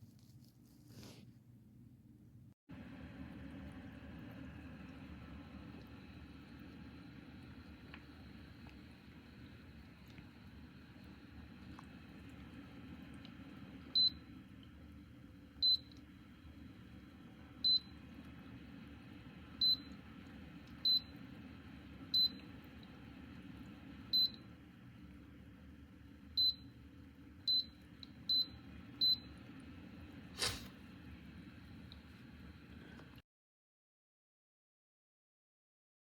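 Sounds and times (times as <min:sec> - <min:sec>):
steady low hum: 0:00.2 - 0:33.2.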